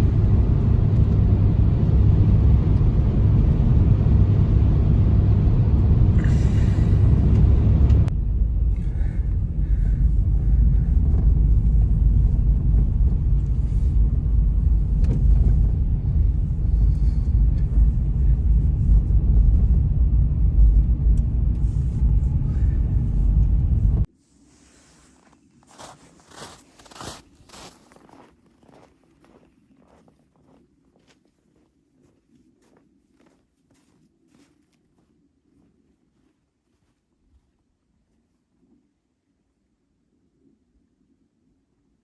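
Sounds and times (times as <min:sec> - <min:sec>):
wind buffeting microphone: 0:00.0 - 0:24.1.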